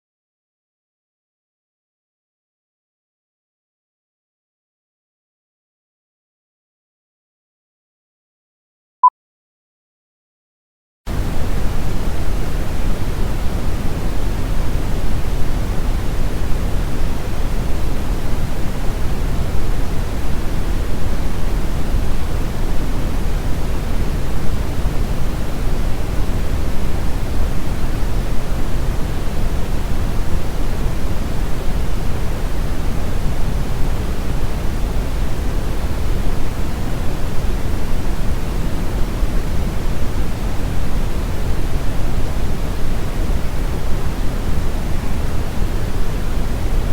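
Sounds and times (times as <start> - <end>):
steady pink noise: 11.1 - 46.9.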